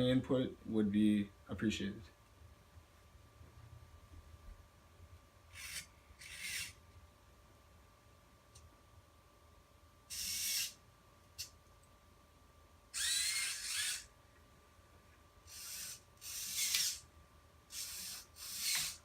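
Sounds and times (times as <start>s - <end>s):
faint electronic hum: 0.0s - 19.0s
servos whirring: 5.5s - 6.8s, 10.1s - 10.8s, 13.0s - 14.1s, 15.5s - 17.1s, 17.7s - 19.0s.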